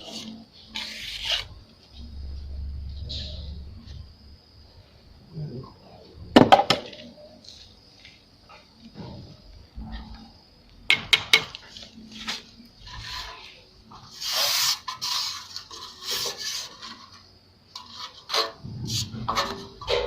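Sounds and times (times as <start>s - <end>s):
trowel scraping wet cement: 0.0s - 1.5s, 14.1s - 17.1s.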